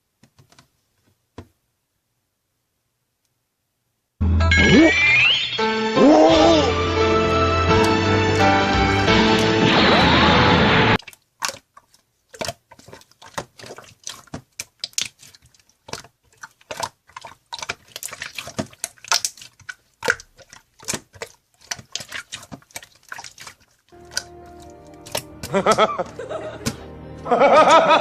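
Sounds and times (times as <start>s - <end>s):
background music: 4.2s - 11.0s, 24.0s - 28.0s.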